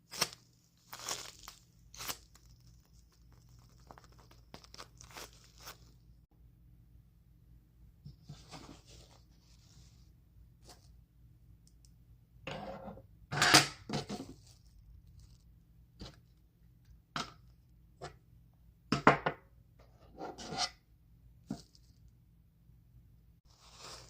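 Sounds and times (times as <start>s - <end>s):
plastic wrap crinkling: 0.0s - 6.2s, 14.2s - 15.5s, 23.5s - 24.0s.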